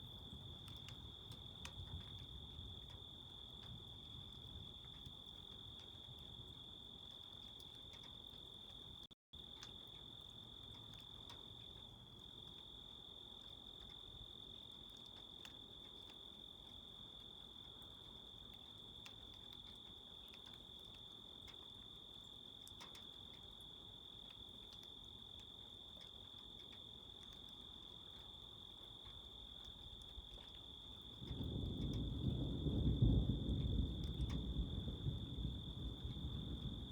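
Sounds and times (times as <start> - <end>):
crickets trilling: 21.0 - 36.9.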